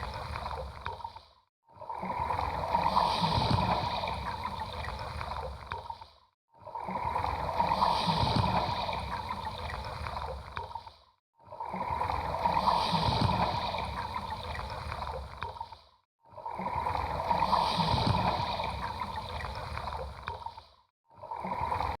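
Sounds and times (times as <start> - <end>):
ocean waves washing in: 1.8 - 5.6, 6.8 - 10.5, 11.6 - 15.7, 16.4 - 20.6.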